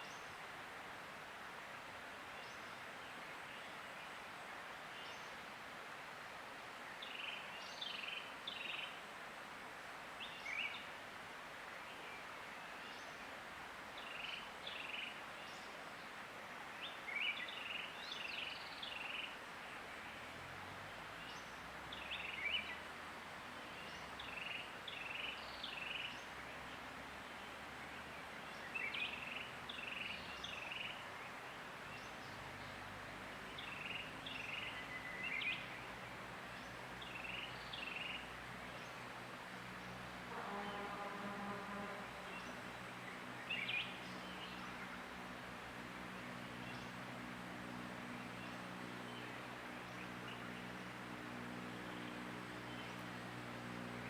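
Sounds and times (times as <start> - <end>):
steady background hiss: 0.0 - 54.0
songbird singing chirpy phrases: 6.8 - 9.0, 10.2 - 10.9, 14.0 - 22.9, 23.5 - 39.1, 39.7 - 45.2, 46.1 - 47.1, 51.8 - 53.3.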